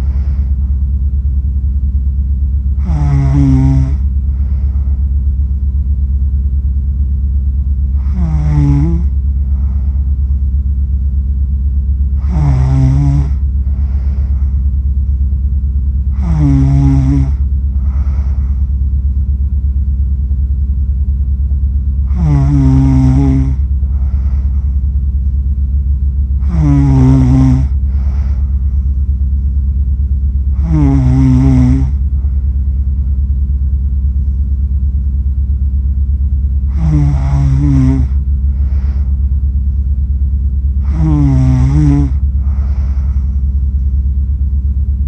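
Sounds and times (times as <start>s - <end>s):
person snoring: 0.0s - 0.6s, 2.8s - 5.0s, 8.0s - 10.1s, 12.2s - 14.6s, 16.1s - 18.7s, 22.0s - 24.8s, 26.4s - 28.6s, 30.5s - 32.4s, 36.7s - 39.2s, 40.8s - 43.4s
soft breath: 0.0s - 1.1s, 2.8s - 5.6s, 7.9s - 10.7s, 12.1s - 19.3s, 22.1s - 29.9s, 30.5s - 34.6s, 36.6s - 40.0s, 40.8s - 44.5s
low hum: 0.0s - 45.0s.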